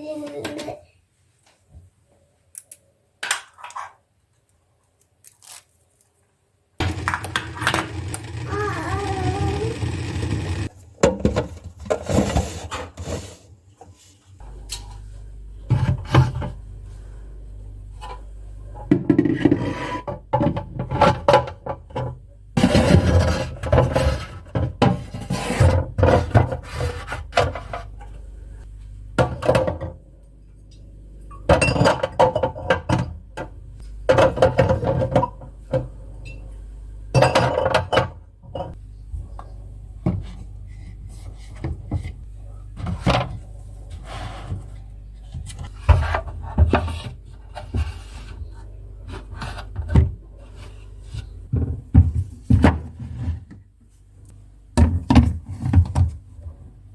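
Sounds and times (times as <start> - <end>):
low steady hum: 14.4 - 56.9.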